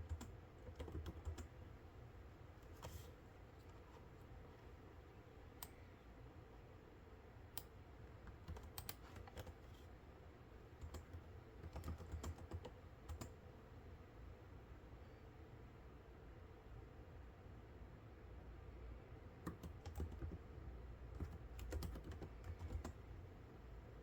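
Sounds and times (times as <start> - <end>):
computer keyboard keystrokes: 0.0 - 1.5, 8.3 - 9.6, 10.8 - 13.4, 19.4 - 20.4, 21.1 - 23.0
faint low hum: 0.0 - 24.0.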